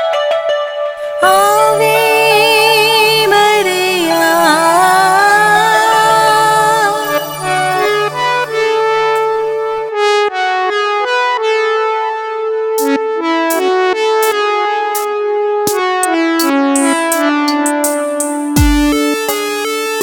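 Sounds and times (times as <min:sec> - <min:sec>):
keyboard melody over chords: 0:00.0 - 0:20.0
percussion hits: 0:15.7 - 0:19.0.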